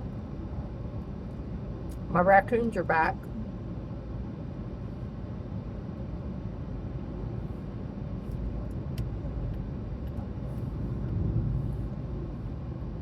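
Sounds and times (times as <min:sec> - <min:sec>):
car interior road rumble: 0:00.0 - 0:13.0.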